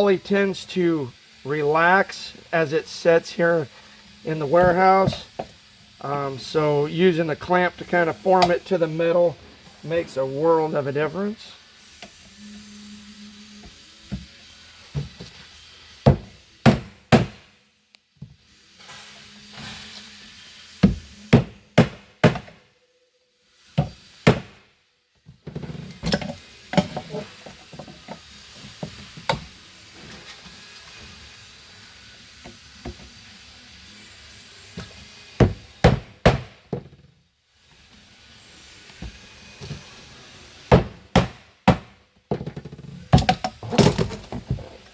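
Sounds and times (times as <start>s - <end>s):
hammer striking rivets: 16.0s - 17.5s, 20.8s - 22.6s, 23.8s - 24.6s, 34.8s - 36.9s.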